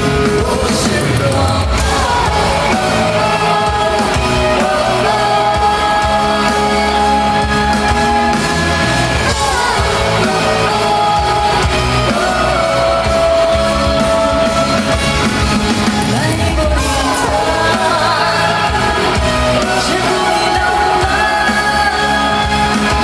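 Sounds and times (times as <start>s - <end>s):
person singing long wordless notes: 0.0s - 23.0s
pop-rock band playing: 0.0s - 23.0s.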